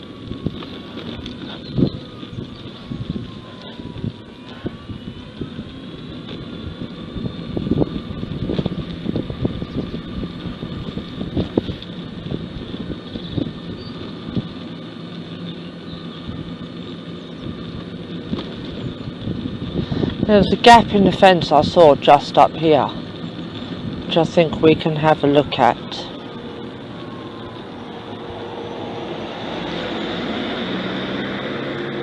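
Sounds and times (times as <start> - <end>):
small vehicle motor whine: 0.0 - 32.0.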